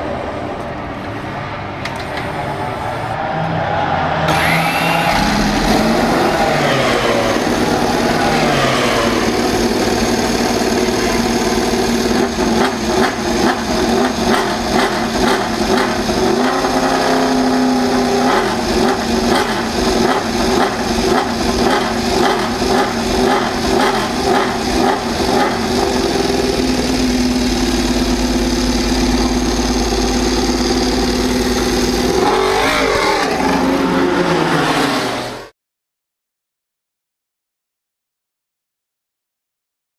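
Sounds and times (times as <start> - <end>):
motorcycle engine revving: 4.3 - 35.5.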